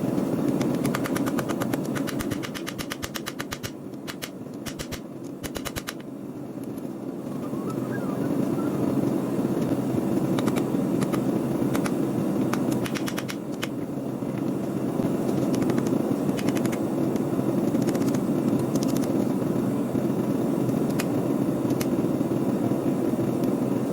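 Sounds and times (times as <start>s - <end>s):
hammer strikes on hot steel: 0.5s - 6.0s
steady low roar: 7.2s - 10.0s.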